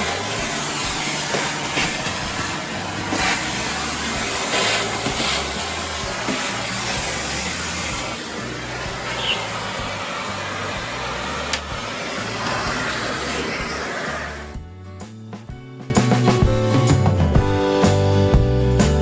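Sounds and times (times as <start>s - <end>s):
vacuum cleaner running: 0.0s - 14.6s.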